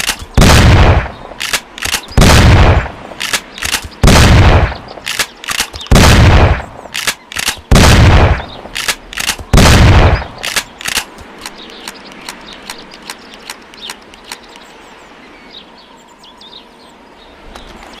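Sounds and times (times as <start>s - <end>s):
light metallic clicks: 0.0s - 0.4s, 1.4s - 2.2s, 3.2s - 4.0s, 5.0s - 5.9s, 6.9s - 7.7s, 10.4s - 14.7s
shotgun blasts: 0.0s - 11.1s
shotgun slide racking: 5.1s - 5.9s, 7.0s - 7.6s, 10.4s - 13.6s.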